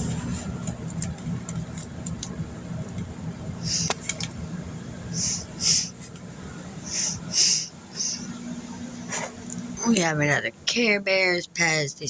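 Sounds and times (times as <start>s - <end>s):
steady low rumble: 0.0s - 12.0s
short breaths: 6.8s - 8.3s.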